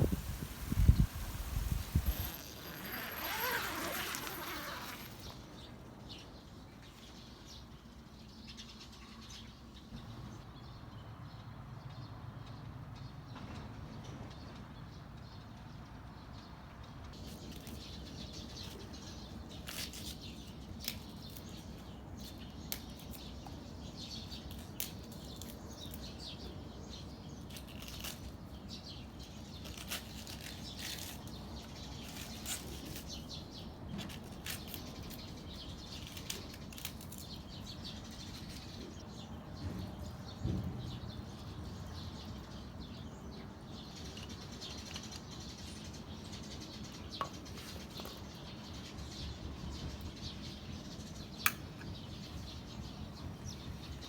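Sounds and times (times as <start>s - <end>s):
small birds chirping: 0.0s - 13.3s, 14.3s - 54.0s.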